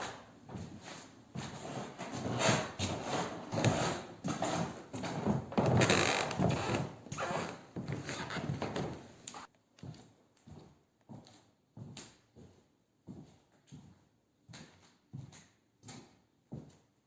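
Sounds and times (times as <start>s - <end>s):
wooden floorboards creaking: 3.6s - 9.4s.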